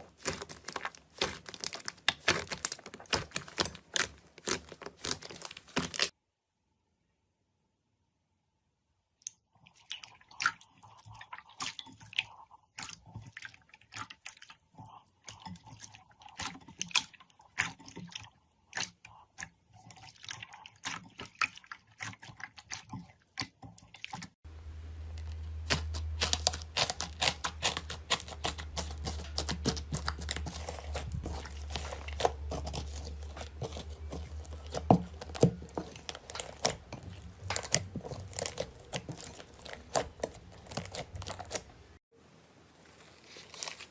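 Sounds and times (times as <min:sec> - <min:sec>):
slime squeezed by hand: 0:00.0 - 0:06.1.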